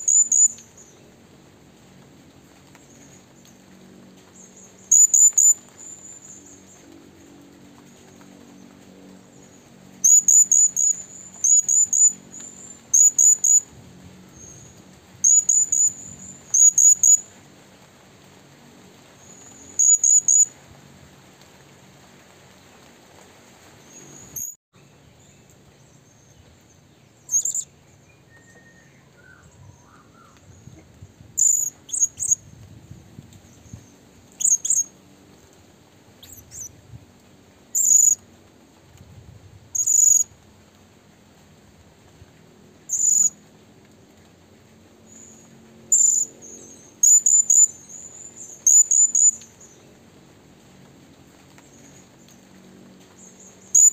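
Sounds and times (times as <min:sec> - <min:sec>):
bird chirping high-pitched: 0:00.0 - 0:00.9, 0:04.9 - 0:06.4, 0:10.0 - 0:13.6, 0:15.2 - 0:17.2, 0:19.4 - 0:20.5, 0:27.3 - 0:27.7, 0:31.4 - 0:32.4, 0:34.4 - 0:34.9, 0:36.2 - 0:36.7, 0:37.8 - 0:38.2, 0:39.8 - 0:40.2, 0:42.9 - 0:43.3, 0:47.0 - 0:49.4, 0:53.7 - 0:53.9.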